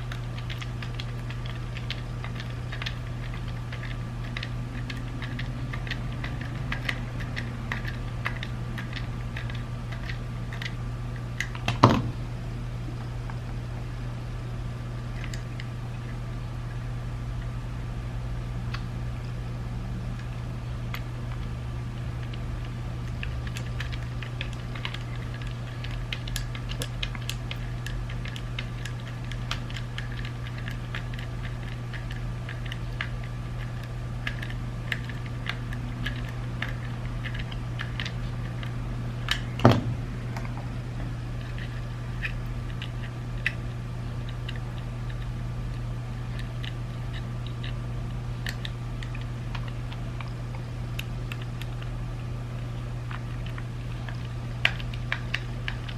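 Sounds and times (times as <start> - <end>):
steady low hum: 0.0 - 55.9
plastic parts clicking: 23.1 - 40.6.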